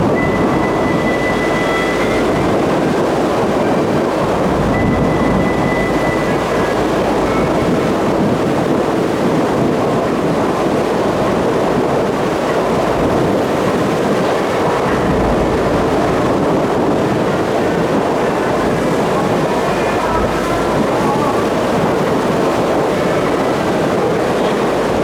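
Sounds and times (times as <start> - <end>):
ferry engine drone: 0.0 - 25.0
water rushing along hull: 0.0 - 25.0.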